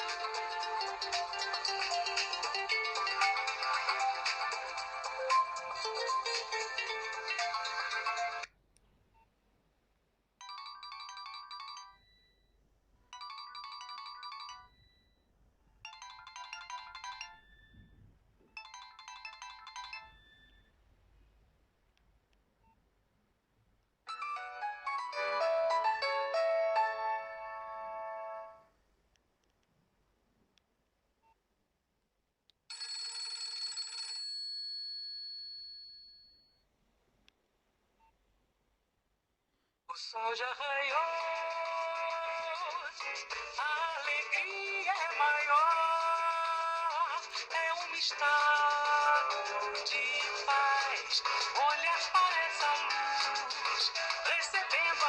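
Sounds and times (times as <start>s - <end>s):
mobile phone ringtone: 0.0s - 8.5s, 10.4s - 12.5s, 13.1s - 15.2s, 15.8s - 18.0s, 18.6s - 20.7s, 24.1s - 28.6s, 32.7s - 36.5s, 48.1s - 53.5s.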